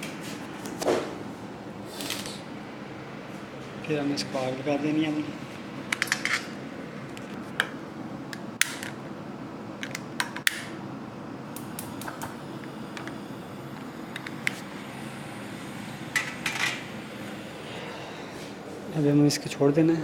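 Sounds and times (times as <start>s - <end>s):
steady hum: 0.0s - 20.0s
stove igniter clicks: 8.3s - 9.0s, 9.9s - 10.7s, 11.5s - 14.6s.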